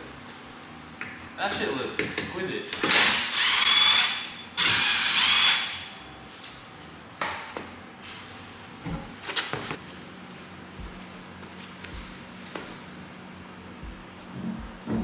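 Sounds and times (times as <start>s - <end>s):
power tool whirring: 2.7s - 6.1s.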